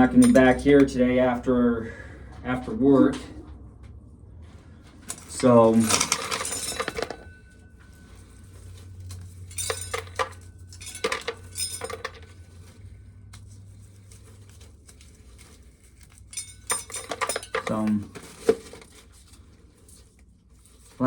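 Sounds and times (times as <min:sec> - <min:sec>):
steady low hum: 0:00.0 - 0:21.0
corn kernels rattling into tub: 0:05.1 - 0:07.3.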